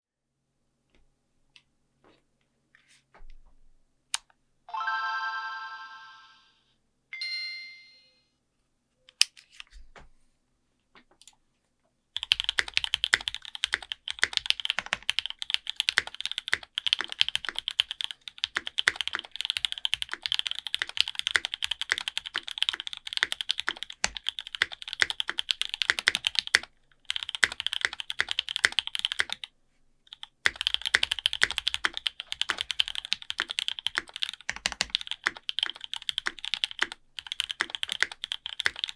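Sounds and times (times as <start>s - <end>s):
ringing dings: 7.2s - 8.2s
fast mechanical keyboard typing: 12.2s - 29.5s, 30.1s - 38.9s.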